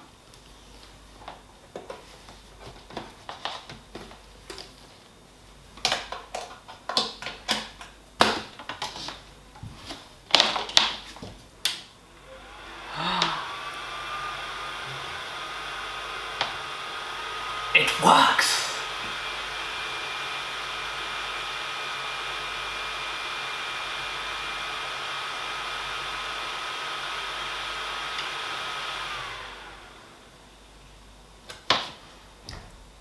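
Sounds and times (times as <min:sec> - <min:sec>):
printer fans whirring: 0:12.1 - 0:25.3.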